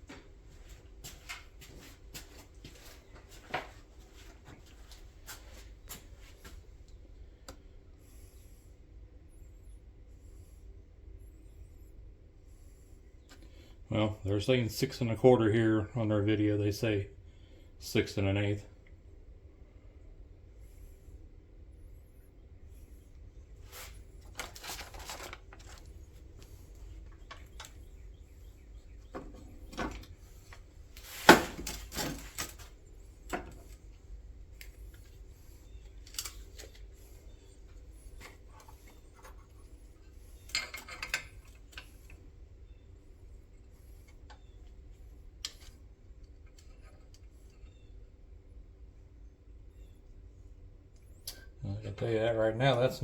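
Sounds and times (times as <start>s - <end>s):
faint steady hum: 0.0s - 53.0s
metal tools clinking and rattling: 40.4s - 41.9s.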